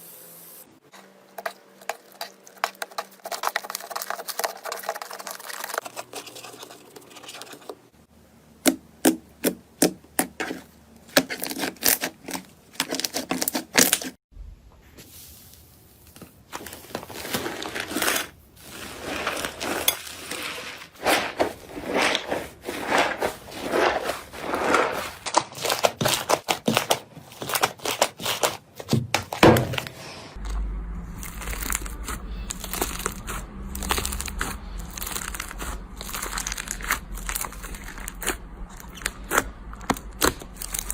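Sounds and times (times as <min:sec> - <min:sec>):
slime squeezed crackling and popping: 0:31.2 - 0:40.9.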